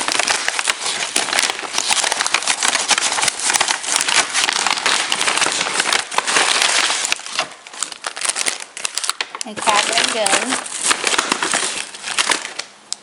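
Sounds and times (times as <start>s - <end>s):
takeout bag rustling: 0.0s - 12.7s.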